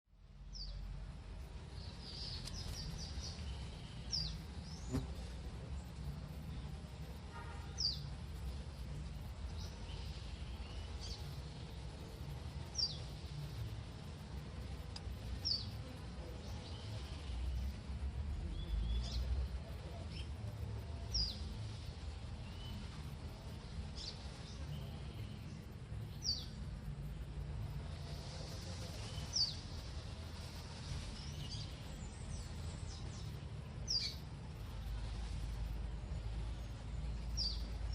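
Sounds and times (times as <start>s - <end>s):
small bird chirping: 0.4s - 17.8s, 18.4s - 37.9s.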